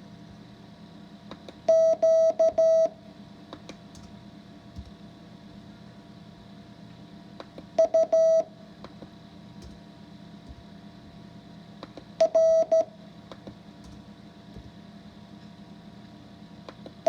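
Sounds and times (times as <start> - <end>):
faint background hum: 0.0 - 17.0
morse code beeps: 1.7 - 2.9, 7.8 - 8.5, 12.2 - 12.9.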